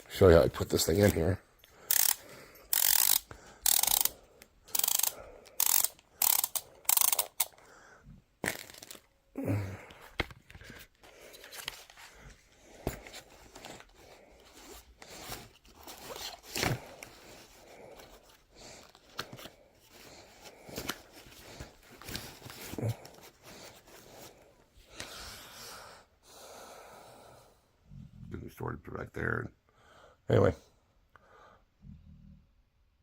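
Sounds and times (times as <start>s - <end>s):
rustling: 10.0s - 25.1s.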